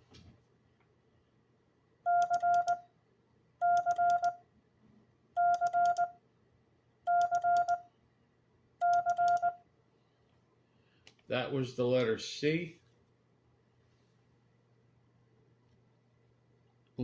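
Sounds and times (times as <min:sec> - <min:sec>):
morse code beeps: 0:02.1 - 0:02.9, 0:03.6 - 0:04.4, 0:05.4 - 0:06.2, 0:07.1 - 0:07.9, 0:08.8 - 0:09.6.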